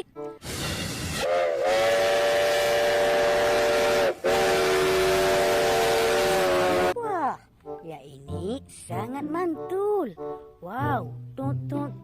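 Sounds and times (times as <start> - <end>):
rush of steam: 0.4 - 7.0
steam locomotive whistle: 0.4 - 7.0.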